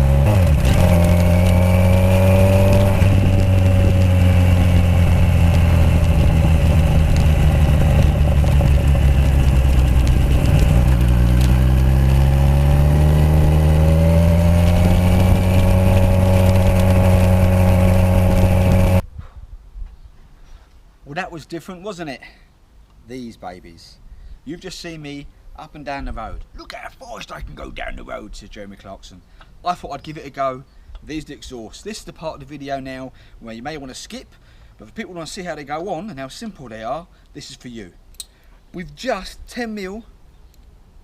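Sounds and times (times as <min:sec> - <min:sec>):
motorcycle engine accelerating: 0:00.0 - 0:19.0.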